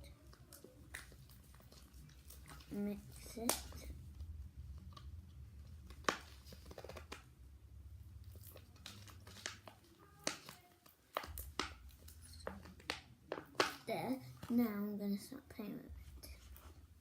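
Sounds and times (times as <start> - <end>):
sticky slime clicks and crackles: 3.3 - 3.9, 4.8 - 7.3, 8.2 - 13.8.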